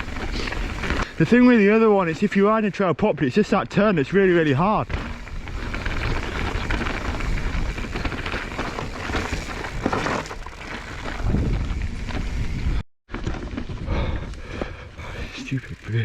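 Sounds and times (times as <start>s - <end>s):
bike tyre rumble: 0.0s - 16.0s.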